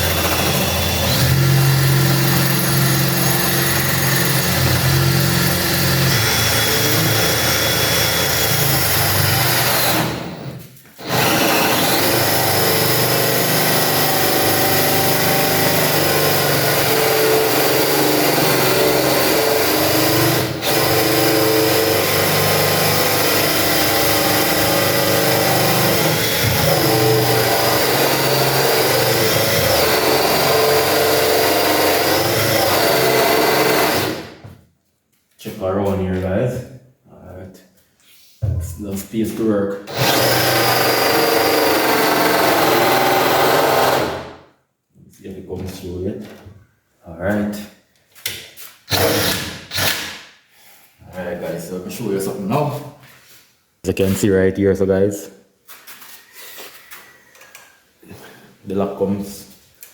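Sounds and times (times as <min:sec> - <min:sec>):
electric drill cutting wood: 0:00.0 - 0:34.4, 0:39.9 - 0:44.4, 0:48.9 - 0:50.1.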